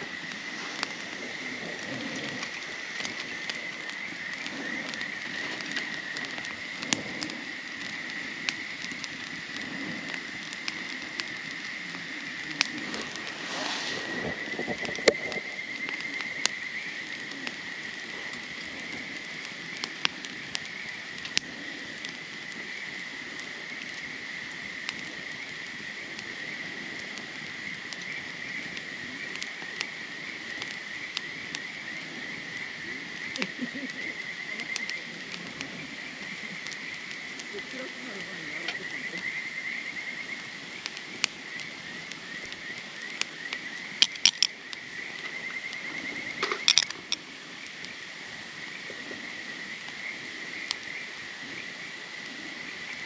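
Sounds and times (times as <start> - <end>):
campfire crackling and popping: 0.0 - 53.0.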